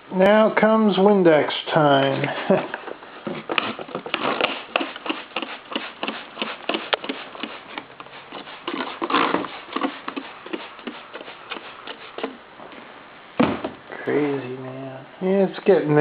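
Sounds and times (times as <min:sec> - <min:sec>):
rubbing and scraping on case: 0:03.2 - 0:12.4.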